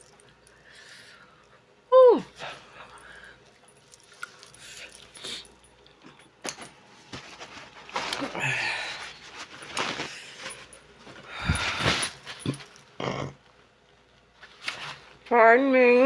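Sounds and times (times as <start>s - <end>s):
woman speaking: 1.9s - 2.4s, 15.3s - 16.0s
close eating sounds: 2.2s - 6.6s.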